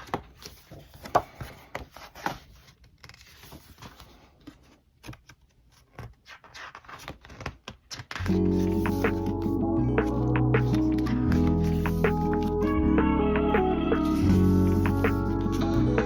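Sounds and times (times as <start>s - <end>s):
book pages rustling: 0.0s - 12.7s, 14.0s - 15.8s
background music: 8.2s - 16.0s.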